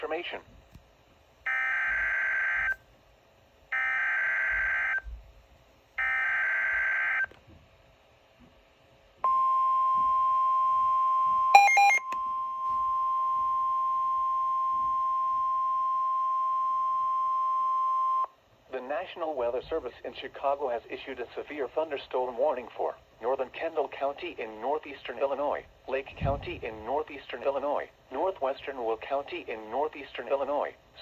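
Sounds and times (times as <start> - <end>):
loud steady alert tone: 1.5 - 2.8, 3.7 - 5.0, 6.0 - 7.3, 11.6 - 15.8.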